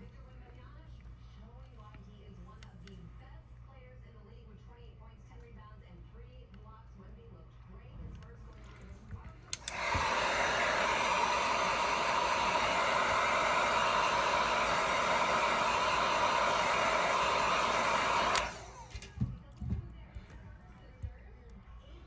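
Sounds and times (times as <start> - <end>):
blower switch click: 9.5 - 19.1
hot air blower hissing: 9.5 - 19.1.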